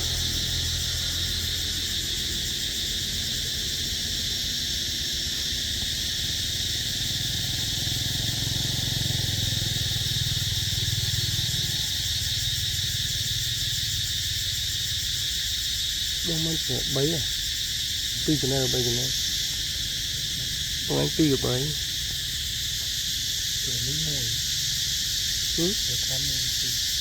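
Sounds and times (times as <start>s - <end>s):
insects chorus: 0.0s - 27.0s.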